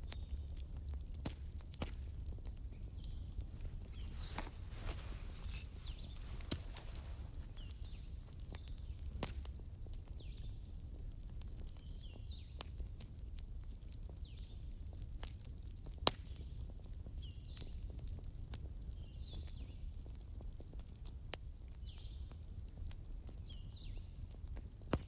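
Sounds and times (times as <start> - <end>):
wood fire crackling: 0.2 - 16.7.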